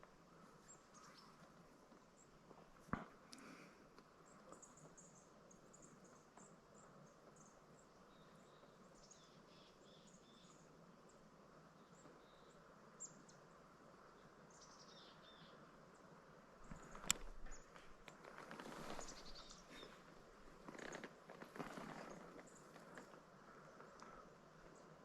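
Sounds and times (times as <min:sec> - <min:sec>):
faint click: 0:02.9 - 0:04.6, 0:16.7 - 0:18.2
faint high bird chirps: 0:04.2 - 0:10.7, 0:11.8 - 0:13.4, 0:14.1 - 0:15.7, 0:18.7 - 0:20.1.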